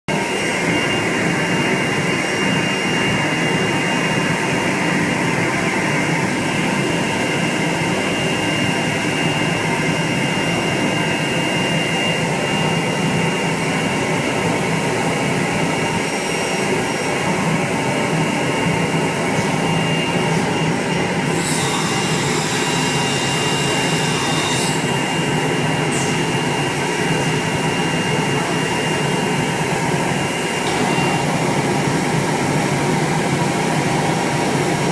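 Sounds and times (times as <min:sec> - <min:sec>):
thin steady whine: 0:00.1 - 0:34.9
router spindle cutting wood: 0:21.2 - 0:26.5.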